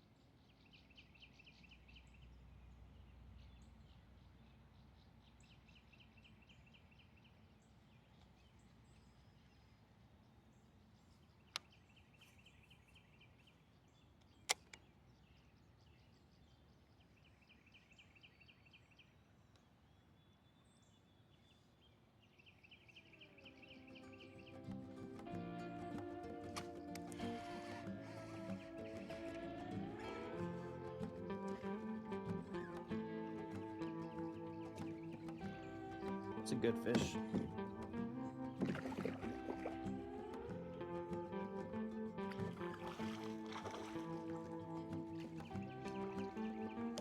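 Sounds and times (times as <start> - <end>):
sharp clicks: 14.5 - 14.8.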